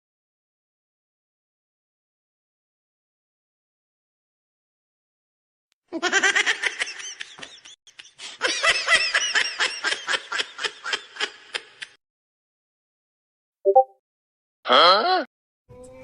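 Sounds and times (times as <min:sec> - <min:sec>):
person laughing hard: 0:06.0 - 0:11.9.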